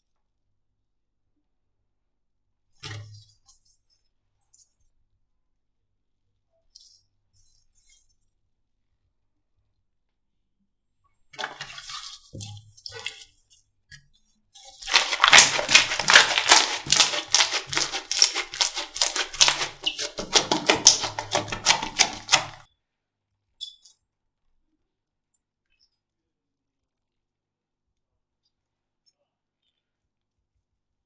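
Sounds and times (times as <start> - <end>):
slime squishing with wet pops: 14.8 - 22.6.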